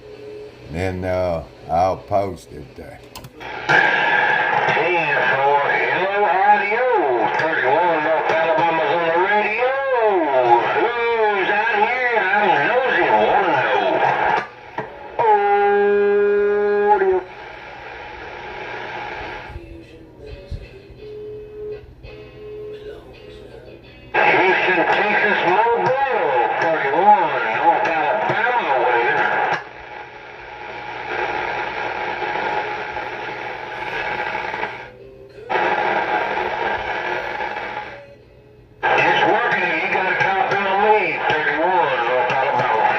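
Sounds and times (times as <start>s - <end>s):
radio static hiss: 0.0s - 20.0s, 24.1s - 38.2s, 38.8s - 42.9s
buzzy horn tone over radio: 4.4s - 17.8s, 38.8s - 42.9s.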